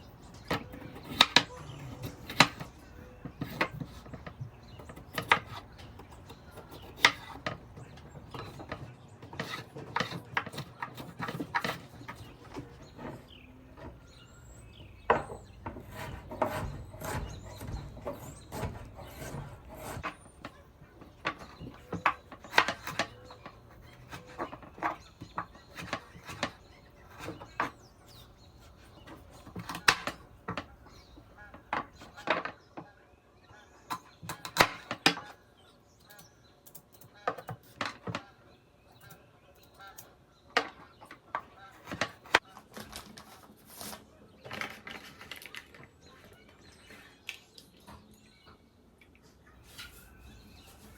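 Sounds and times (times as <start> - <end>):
utensils tapping and knocking: 0.2 - 32.6.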